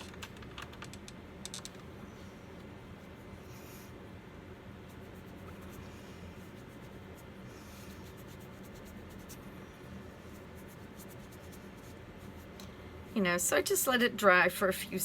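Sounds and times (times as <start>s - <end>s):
steady low hum: 0.0s - 15.0s
faint scratching strokes: 4.8s - 12.5s.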